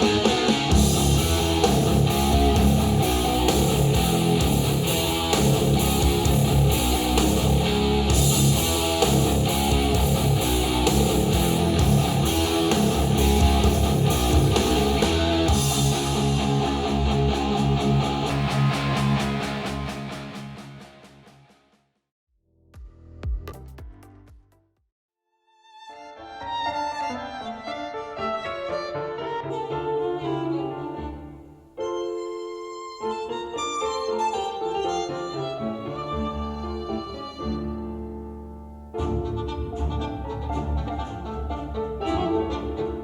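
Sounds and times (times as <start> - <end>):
guitar-led music through speakers: 0.0 - 21.4.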